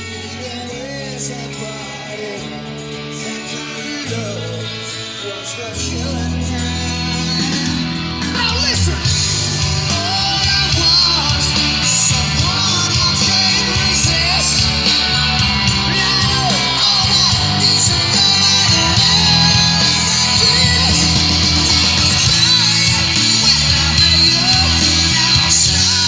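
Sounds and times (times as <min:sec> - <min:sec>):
heavy bass line: 0:00.0 - 0:26.0
rock song with singing and guitar: 0:00.0 - 0:26.0.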